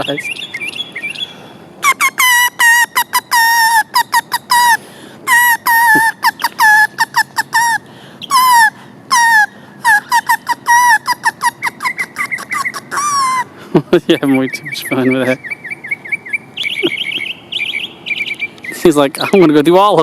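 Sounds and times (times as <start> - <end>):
grass reed whistle squealing: 0.0 - 13.5.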